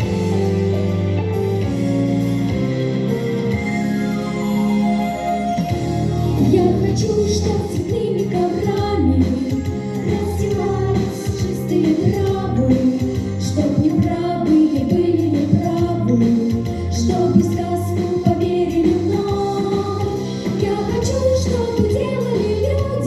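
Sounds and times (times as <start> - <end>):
instrumental backing track: 0.0 - 23.0
girls singing a duet: 6.2 - 23.0.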